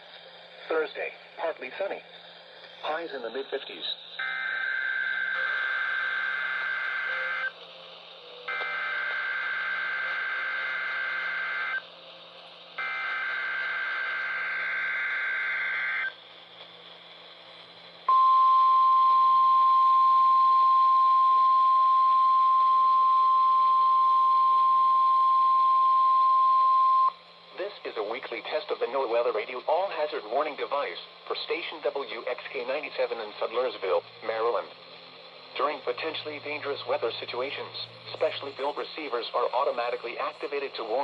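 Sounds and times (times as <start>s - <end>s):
radio background hiss: 0.0s - 18.1s, 20.0s - 41.0s
steady warning alarm tone: 4.2s - 7.6s, 8.4s - 11.8s, 12.8s - 16.2s, 18.1s - 27.2s.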